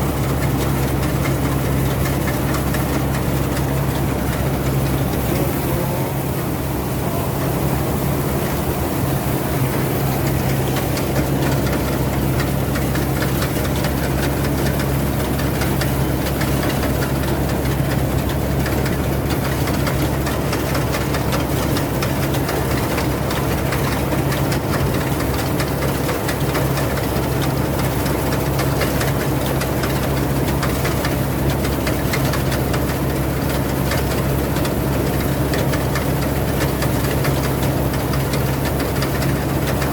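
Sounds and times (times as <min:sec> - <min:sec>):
combine harvester engine droning: 0:00.0 - 0:39.9.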